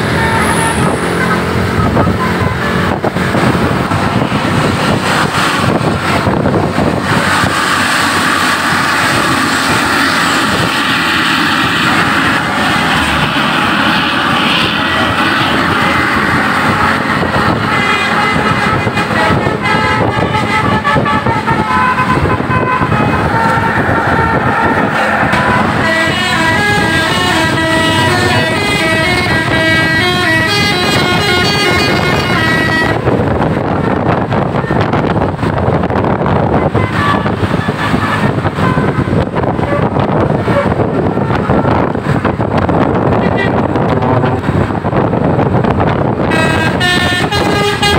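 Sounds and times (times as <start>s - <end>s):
bus engines roaring: 0.0s - 47.9s
multi-note air horns playing tune: 14.9s - 33.1s, 46.3s - 47.9s.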